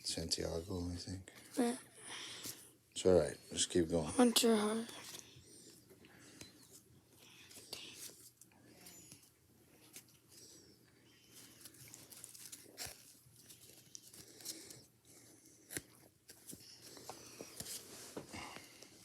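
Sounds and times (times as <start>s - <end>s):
trading cards rustling: 4.5s - 5.2s, 6.3s - 10.6s, 11.3s - 19.0s.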